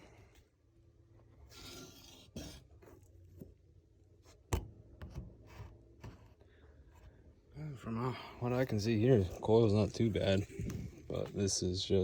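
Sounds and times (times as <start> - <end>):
handling scraping and rubbing: 1.2 - 3.6.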